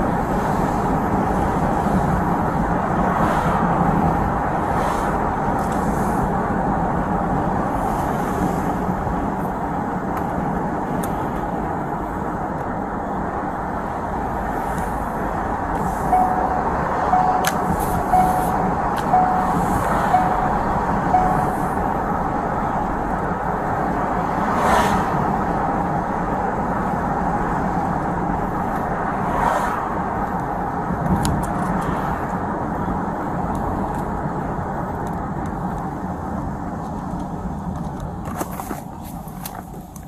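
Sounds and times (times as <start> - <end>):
vehicle noise: 0.0 - 40.0
short electronic beeps: 16.1 - 21.8.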